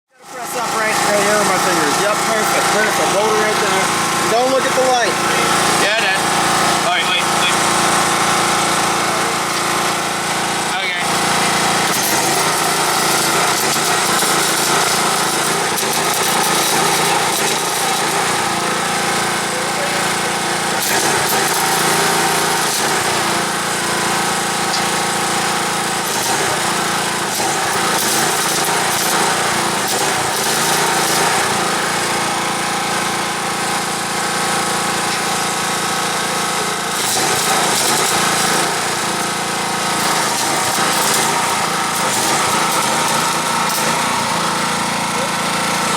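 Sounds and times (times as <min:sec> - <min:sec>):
small engine running: 0:00.1 - 0:45.9.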